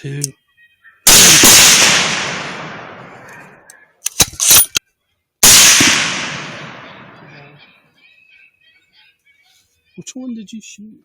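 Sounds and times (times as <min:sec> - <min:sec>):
rifle shot with rolling echo: 0:01.0 - 0:03.6, 0:05.4 - 0:07.5.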